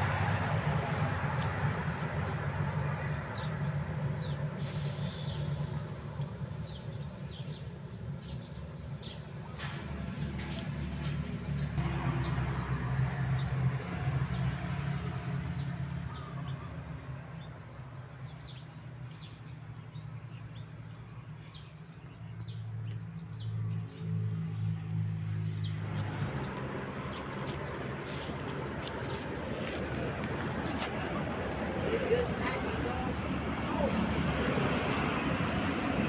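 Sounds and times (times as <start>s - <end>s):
low engine hum: 0.0s - 36.0s
small birds chirping: 2.2s - 9.7s, 15.5s - 34.0s.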